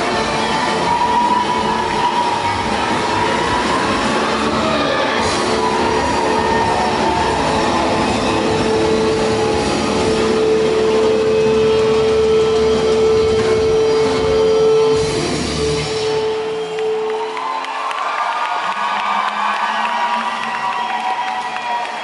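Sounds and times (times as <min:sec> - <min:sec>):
loud dense music: 0:00.0 - 0:17.3.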